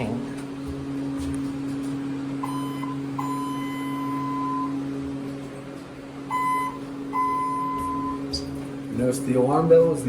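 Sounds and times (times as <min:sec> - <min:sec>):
steady low hum: 0:00.0 - 0:10.0
elevator signal buzzer: 0:02.4 - 0:05.1, 0:06.2 - 0:08.6.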